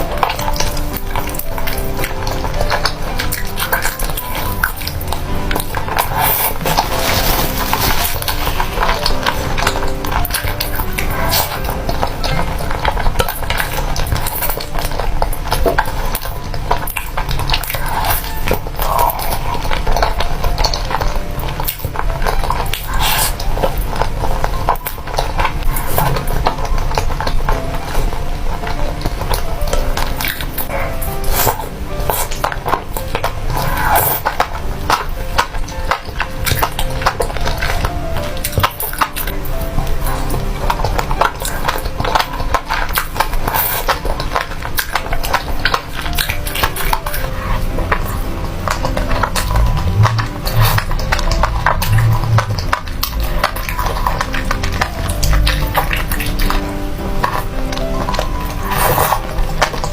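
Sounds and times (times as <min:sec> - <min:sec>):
wet chewing and mouth clicks: 0:00.0 - 0:59.9.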